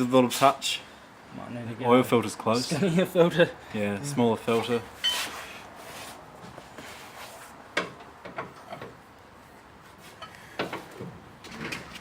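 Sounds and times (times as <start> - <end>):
knocks and clunks of handling: 7.7 - 9.0, 10.2 - 12.0.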